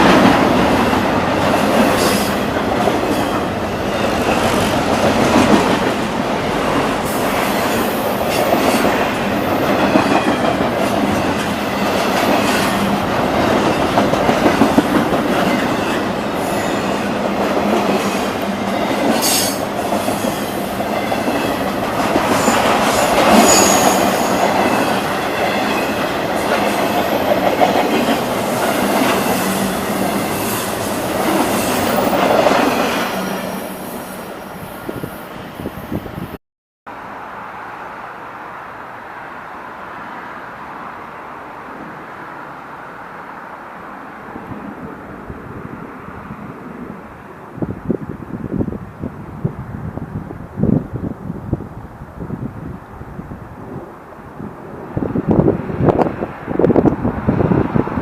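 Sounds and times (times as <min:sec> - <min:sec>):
train wheels clacking over rails: 0:00.0 - 0:33.7.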